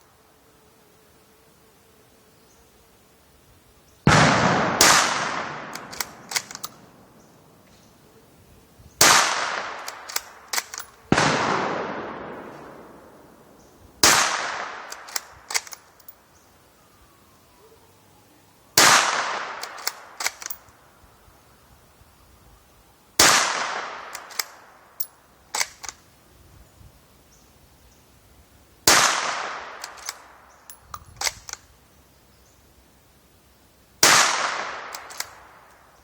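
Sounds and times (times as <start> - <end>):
rifle shots: 4.1 - 7.2, 9.0 - 16.1, 18.8 - 20.6, 23.2 - 24.7, 25.5 - 26.0, 28.9 - 30.4, 34.0 - 35.7
light clicks: 5.7 - 6.8, 9.8 - 11.0, 14.9 - 16.2, 19.6 - 20.7, 24.1 - 26.0, 29.8 - 31.7, 34.9 - 35.8.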